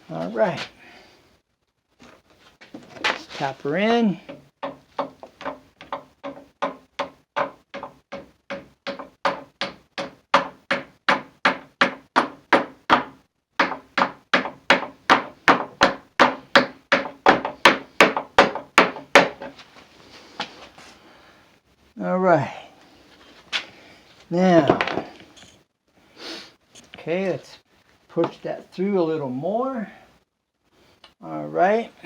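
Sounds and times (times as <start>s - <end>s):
hammer tapping wooden dowel: 4.2s - 19.6s.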